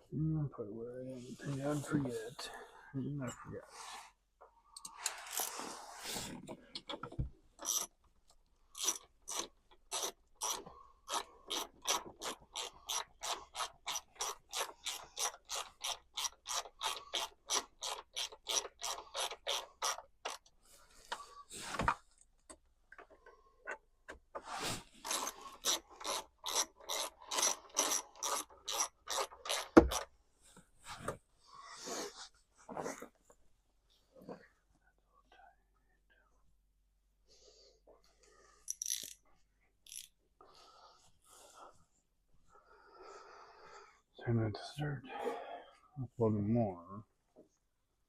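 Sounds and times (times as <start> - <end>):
ratchet wrench clicking: 8.8 - 20.4, 25.1 - 30.0, 38.7 - 39.2, 39.8 - 40.1.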